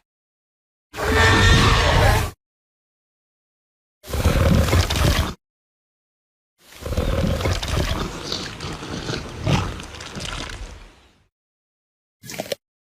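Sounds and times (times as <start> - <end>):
dinosaur roar: 6.8 - 10.9.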